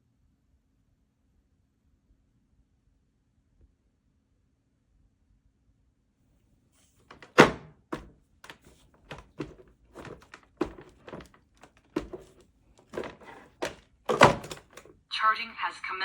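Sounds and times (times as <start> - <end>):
hard plastic knocks and clunks: 7.1 - 14.9.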